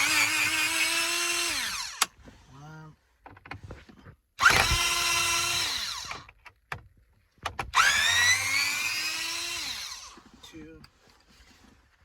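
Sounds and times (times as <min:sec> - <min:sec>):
cordless drill motor whining: 0:00.0 - 0:02.2, 0:04.4 - 0:06.4, 0:07.7 - 0:10.4
drill clicks: 0:04.4 - 0:06.4.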